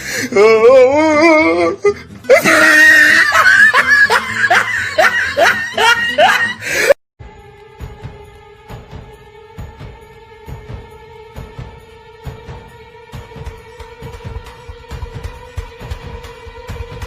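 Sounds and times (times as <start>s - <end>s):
background music with held notes: 0.0s - 17.0s
music: 0.0s - 17.0s
screaming and laughing cries: 0.3s - 7.0s
loud wavering wail: 0.4s - 6.6s.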